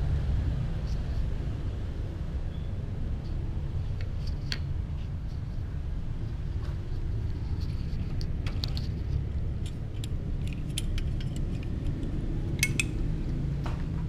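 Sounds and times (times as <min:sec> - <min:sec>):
steady low rumble: 0:00.0 - 0:14.0
light clicks and clinks: 0:08.1 - 0:13.1.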